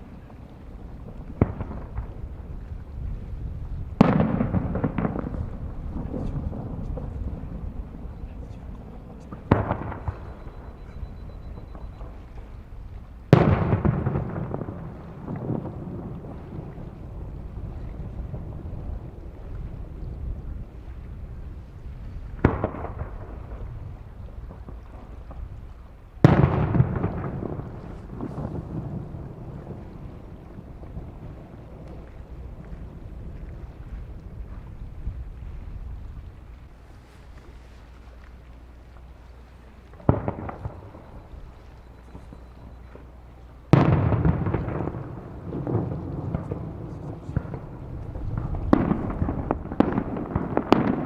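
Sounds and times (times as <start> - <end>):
fireworks crackling: 0.0 - 20.1, 21.9 - 51.0
wind noise on microphone: 0.0 - 51.0
fireworks bangs: 1.0 - 12.5, 13.3 - 17.0, 22.4 - 25.5, 26.2 - 34.6, 40.0 - 51.0.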